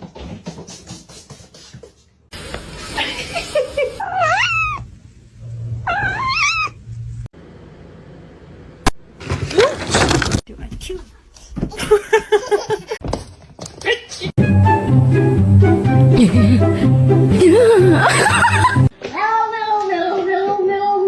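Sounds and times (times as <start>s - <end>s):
cat meowing: 4.0s - 4.9s, 5.8s - 6.8s.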